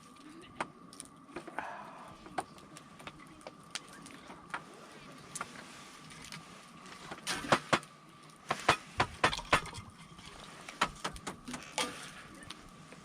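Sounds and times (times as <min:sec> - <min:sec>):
wood fire crackling: 0:00.0 - 0:13.0.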